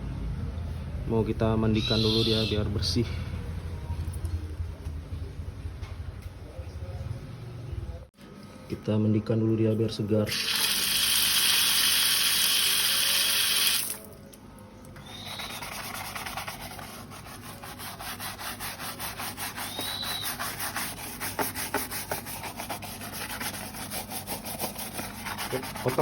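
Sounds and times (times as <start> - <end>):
tap water running: 10.3 - 14.1.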